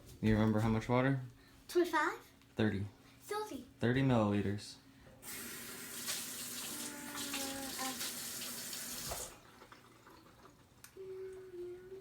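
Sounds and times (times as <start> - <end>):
tap water running into container: 5.2 - 10.8.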